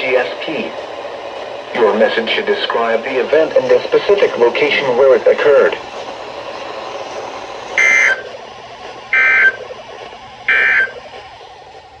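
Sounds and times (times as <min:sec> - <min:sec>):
faint radio hiss: 0:01.7 - 0:08.2
buzzy digital data tones: 0:03.3 - 0:08.3.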